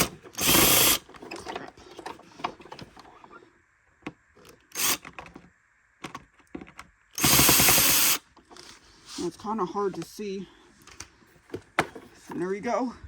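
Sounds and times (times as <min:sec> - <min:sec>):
cordless drill running: 0:00.0 - 0:01.1, 0:04.7 - 0:05.1, 0:07.2 - 0:08.2.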